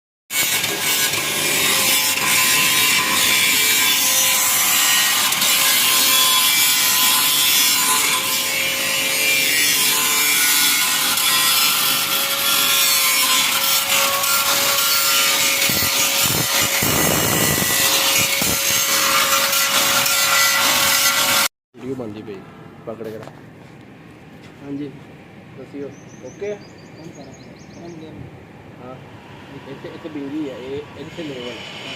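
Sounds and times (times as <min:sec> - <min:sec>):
power tool grinding metal: 0:00.3 - 0:21.5, 0:29.8 - 0:31.9.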